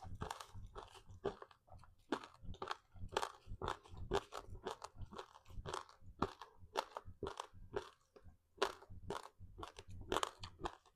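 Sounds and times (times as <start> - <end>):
crispy food chewing crunches: 0.0 - 10.9.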